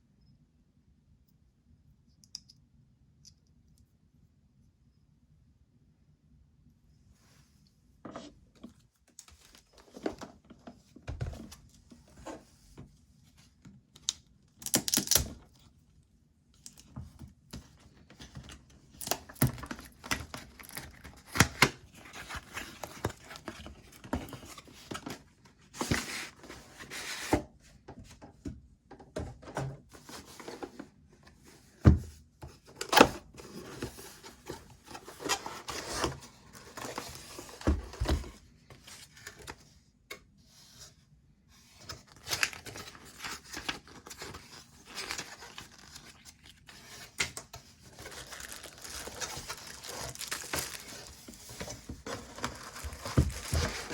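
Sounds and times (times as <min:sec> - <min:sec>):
packaging wrapping rustling: 0:42.1 - 0:46.4, 0:47.8 - 0:53.9.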